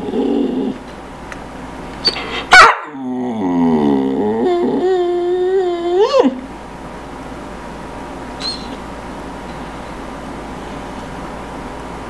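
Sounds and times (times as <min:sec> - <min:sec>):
dog whining: 0:00.0 - 0:00.8, 0:02.0 - 0:06.4, 0:08.4 - 0:08.8.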